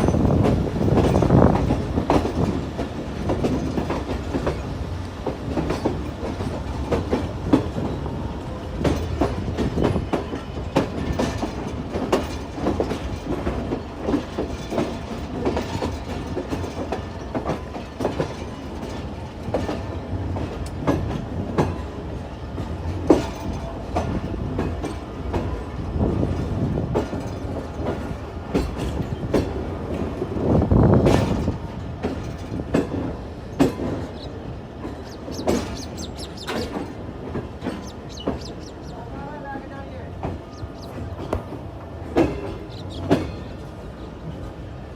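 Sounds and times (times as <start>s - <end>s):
train wheels rumbling on track: 0.0s - 44.9s
wheels clacking on rail joints: 0.0s - 44.9s.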